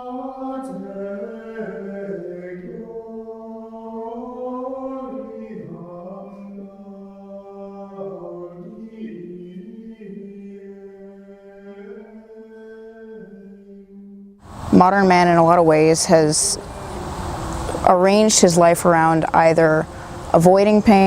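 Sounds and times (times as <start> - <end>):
slow sung chant: 0.0 - 21.0.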